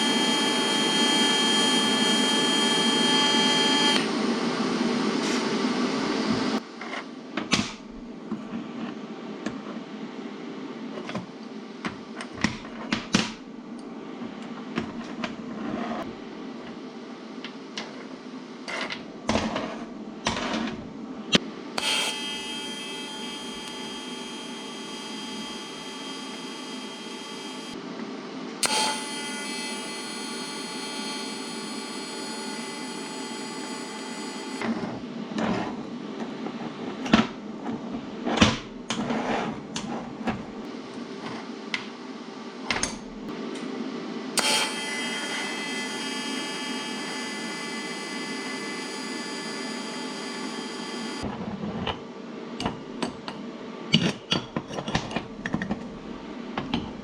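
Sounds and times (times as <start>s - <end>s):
electric motor whining: 0.0s - 4.1s, 21.8s - 27.8s, 28.6s - 34.6s, 44.4s - 51.3s.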